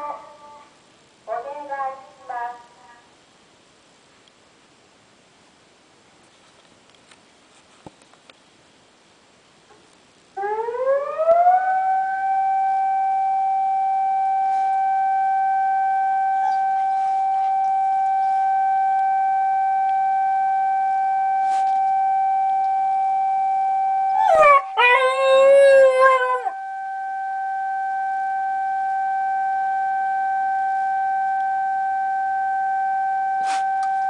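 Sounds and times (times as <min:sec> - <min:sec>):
civil defence siren: 0:10.4 - 0:34.0
dog howling: 0:16.3 - 0:18.6, 0:24.2 - 0:26.6.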